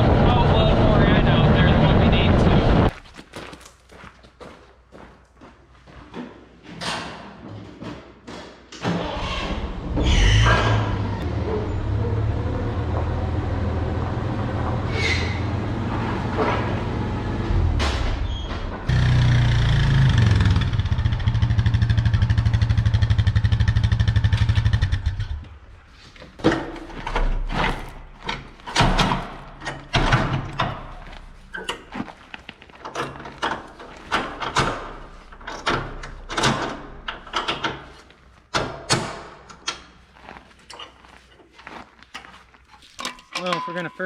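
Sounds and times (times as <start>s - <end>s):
vehicle engine running: 0.0s - 2.9s, 18.9s - 25.8s
metallic clanks and knocks: 43.0s - 44.0s.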